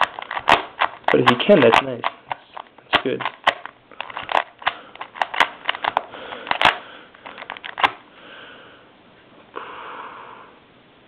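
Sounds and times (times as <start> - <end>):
plastic puzzle cube clicking: 0.0 - 8.0.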